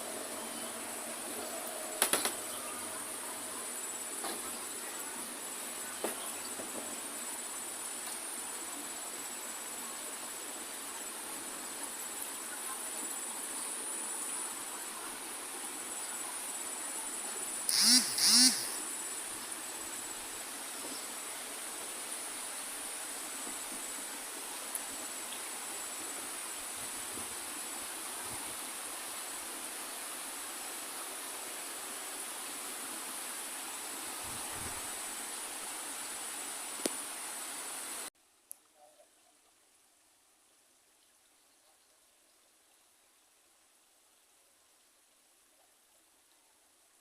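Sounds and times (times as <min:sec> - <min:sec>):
insects droning: 0:00.0 - 0:38.1
loud short calls: 0:17.7 - 0:18.8.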